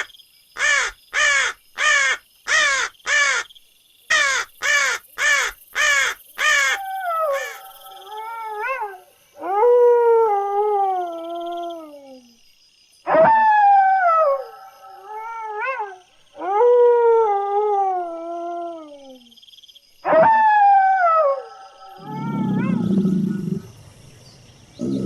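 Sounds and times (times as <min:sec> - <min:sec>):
animal crying: 0:00.6 - 0:03.4, 0:04.1 - 0:11.2, 0:20.1 - 0:23.7
low rough growl: 0:22.0 - 0:25.0.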